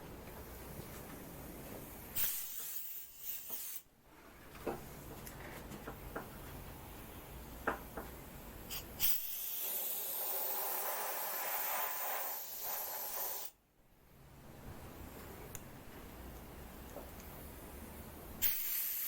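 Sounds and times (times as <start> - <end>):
steady hiss: 0.0 - 3.9, 6.8 - 13.6, 16.1 - 19.0.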